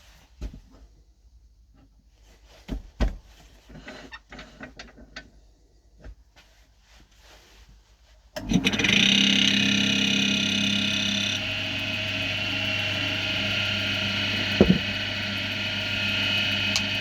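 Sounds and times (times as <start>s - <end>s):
wood lathe humming and whining: 8.4s - 17.0s
light knocks and clicks: 14.6s - 14.9s.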